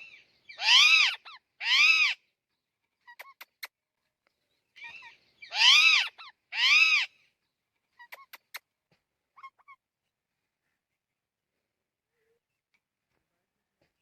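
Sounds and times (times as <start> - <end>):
parrot squawks: 0.5 - 2.2, 4.8 - 7.2
parrot soft chirps and clicks: 3.0 - 5.1, 7.8 - 8.7.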